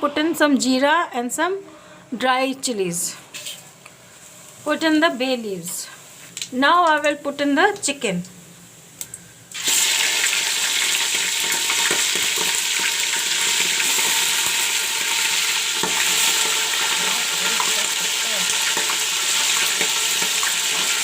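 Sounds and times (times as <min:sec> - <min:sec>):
chicken sizzling in oil: 0:09.5 - 0:21.0.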